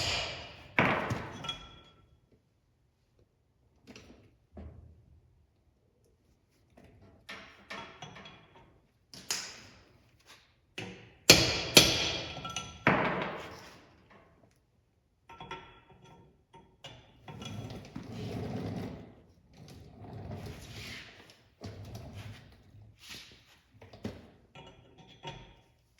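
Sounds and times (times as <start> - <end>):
metal tools knocking and clanking: 11.3 - 13.6, 24.5 - 25.7.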